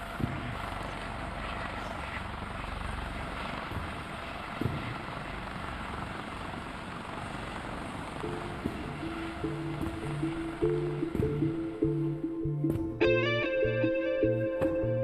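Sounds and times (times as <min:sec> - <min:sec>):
helicopter engine and rotor: 0:00.0 - 0:13.1
music notes: 0:08.2 - 0:15.0.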